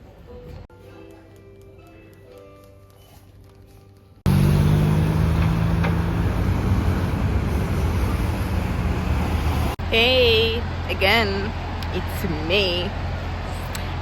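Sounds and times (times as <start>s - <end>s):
soft music: 0.0s - 4.3s
road traffic noise: 4.2s - 14.0s.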